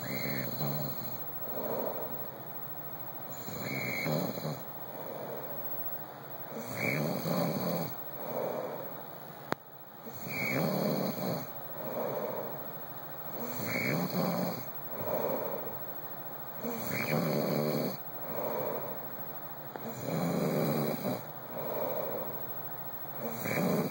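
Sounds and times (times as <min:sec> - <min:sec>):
man snoring: 0:00.0 - 0:02.3, 0:03.3 - 0:05.6, 0:06.5 - 0:09.0, 0:10.0 - 0:12.6, 0:13.3 - 0:15.8, 0:16.6 - 0:19.1, 0:19.8 - 0:23.9.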